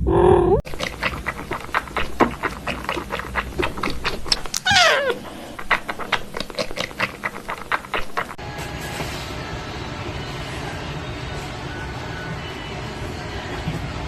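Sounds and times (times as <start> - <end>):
cat meowing: 4.6 - 6.1.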